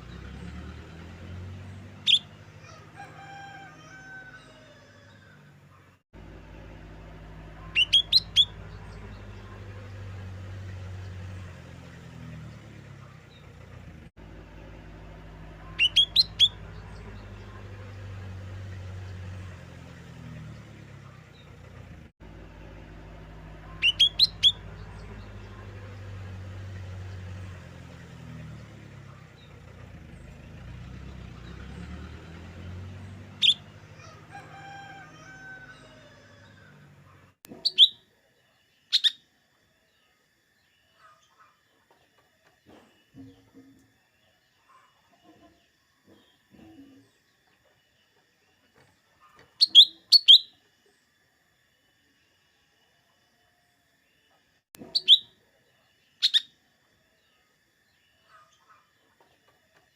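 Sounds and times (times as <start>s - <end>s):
bird sharp high calls: 2.0s - 2.9s, 7.6s - 9.6s, 15.6s - 17.6s, 23.6s - 25.6s, 33.4s - 34.5s, 35.6s - 38.0s, 38.9s - 39.2s, 49.2s - 50.6s, 54.8s - 55.4s, 56.2s - 56.6s
bird whistled notes: 7.6s - 8.6s, 15.6s - 16.6s, 23.6s - 24.6s, 37.6s - 38.0s, 49.6s - 50.5s, 54.9s - 55.3s.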